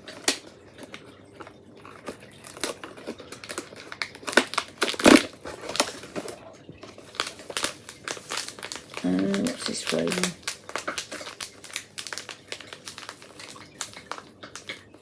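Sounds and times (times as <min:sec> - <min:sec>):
card and wrapper crinkling: 0:00.0 - 0:15.0.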